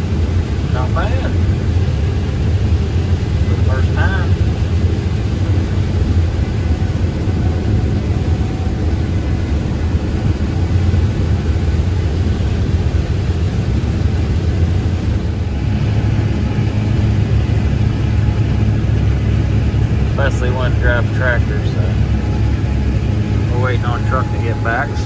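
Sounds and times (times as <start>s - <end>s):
heavy machinery engine drone: 0.0s - 25.0s.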